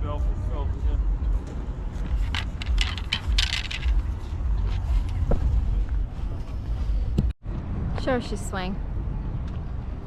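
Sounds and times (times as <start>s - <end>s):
metallic clinks and rattles: 2.2s - 4.1s.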